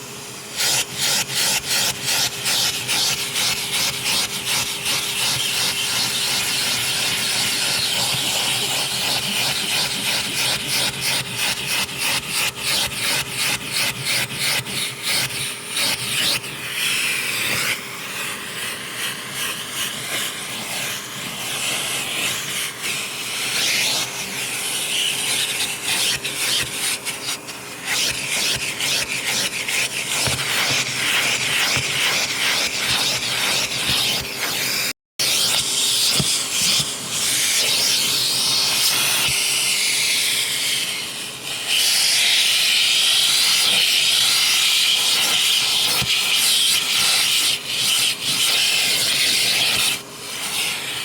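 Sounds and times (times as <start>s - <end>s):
rhythmic rubbing swish on carpet: 0.0s - 51.0s
vacuum cleaner motor hum: 0.0s - 51.0s.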